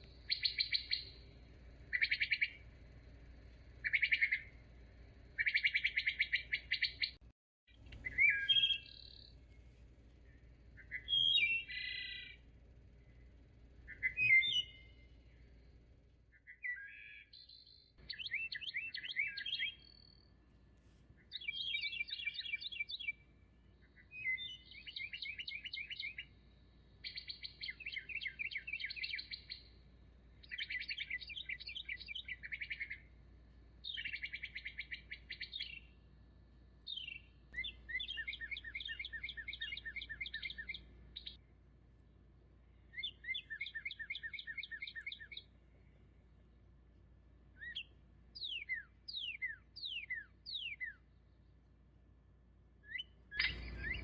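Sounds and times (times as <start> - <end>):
songbird trilling: 0.1 - 1.2, 1.9 - 2.6, 3.8 - 4.6, 5.4 - 7.2, 8.0 - 9.3, 10.8 - 12.4, 13.9 - 15.0, 16.4 - 20.2, 21.2 - 26.4, 27.0 - 29.7, 30.4 - 33.1, 33.8 - 36.0, 36.9 - 41.4, 42.8 - 45.5, 47.6 - 51.0, 52.8 - 54.0
short bird calls: 8.0 - 9.4, 10.3 - 12.4, 13.9 - 15.1, 16.3 - 20.2, 52.9 - 54.0.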